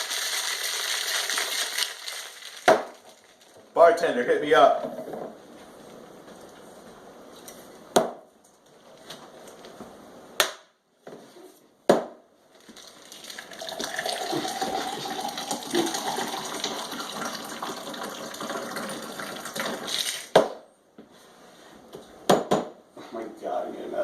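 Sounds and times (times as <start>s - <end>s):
liquid pouring: 0.0s - 3.5s, 12.7s - 20.3s.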